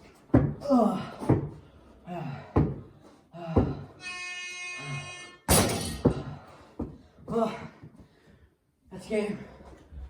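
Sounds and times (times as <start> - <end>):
held tone with overtones: 4.0 - 5.5.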